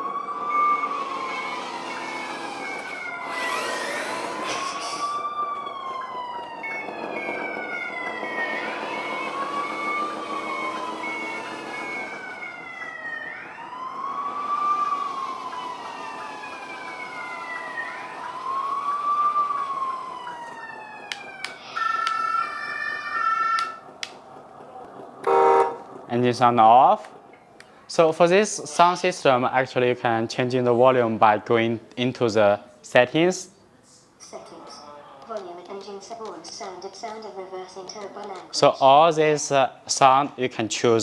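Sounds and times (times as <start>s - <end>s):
electronic wailing siren: 0.0s - 23.9s, 25.2s - 26.0s.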